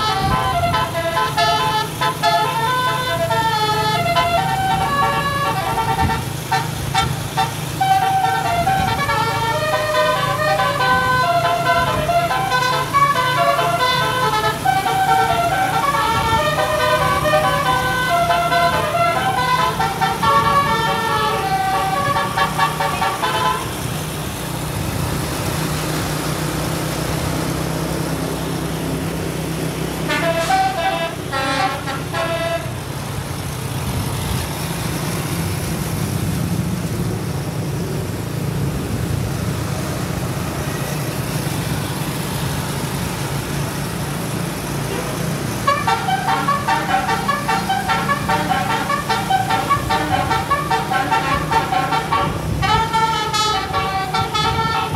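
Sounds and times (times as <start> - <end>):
bus horn playing a melody: 0.0 - 24.2, 29.7 - 33.3, 44.9 - 54.9
low vehicle engine hum: 0.0 - 54.9.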